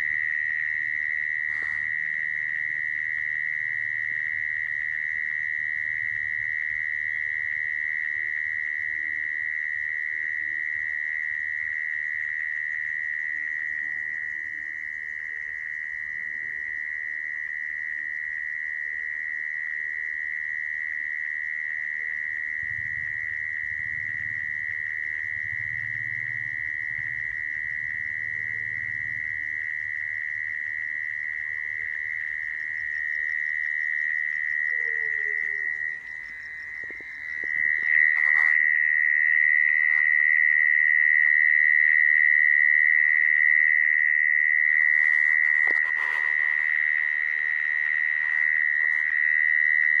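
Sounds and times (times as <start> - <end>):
mole cricket trilling: 0.0 - 50.0.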